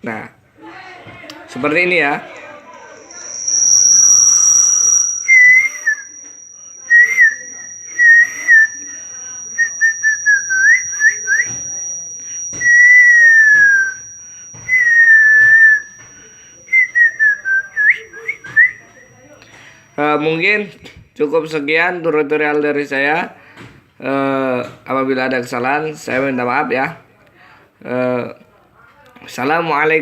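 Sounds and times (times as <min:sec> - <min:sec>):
high-pitched tone: 0:02.7 - 0:20.8
person whistling a tune: 0:03.0 - 0:20.2.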